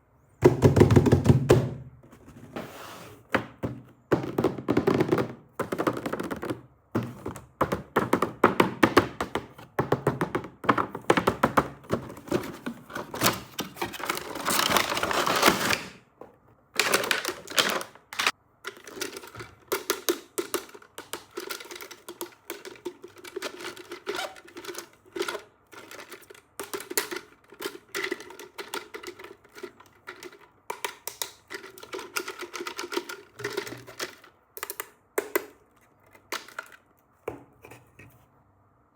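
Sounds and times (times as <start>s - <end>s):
packaging crinkling and rustling: 11.9s - 16.0s, 16.7s - 19.7s, 21.3s - 30.4s.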